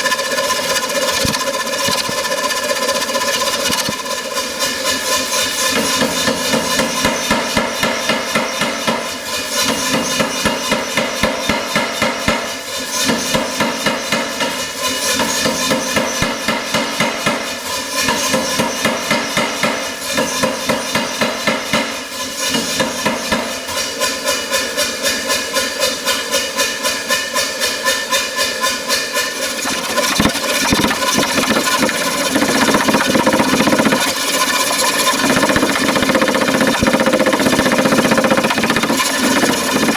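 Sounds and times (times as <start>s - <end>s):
machine running: 0.0s - 8.4s, 29.4s - 39.9s
power hammer blows on steel: 28.9s - 39.9s.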